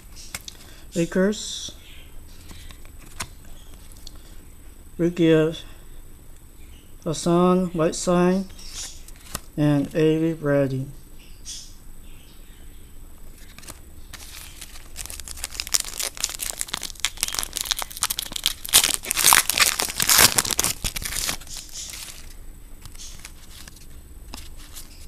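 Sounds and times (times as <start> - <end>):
foil wrapper crinkling and tearing: 13.6 - 25.0.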